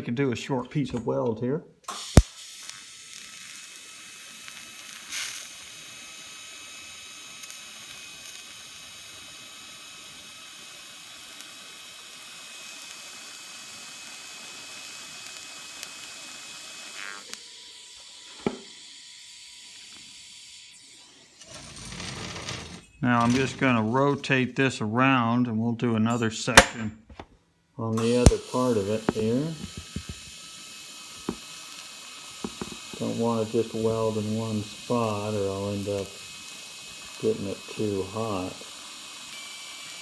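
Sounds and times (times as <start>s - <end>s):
welding arc hissing: 1.9s - 22.1s, 26.1s - 26.8s, 28.0s - 40.0s
single knock: 29.1s - 30.3s, 32.4s - 32.9s.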